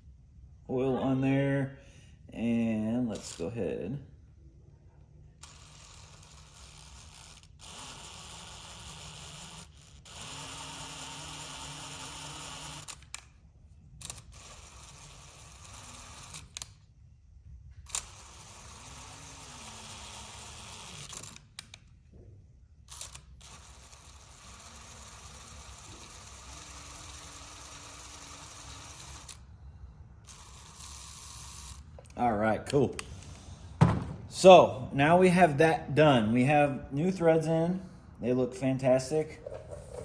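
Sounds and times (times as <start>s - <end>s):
cordless drill motor hum: 5.4s - 13.3s, 17.9s - 21.8s, 22.9s - 29.6s, 30.2s - 32.1s.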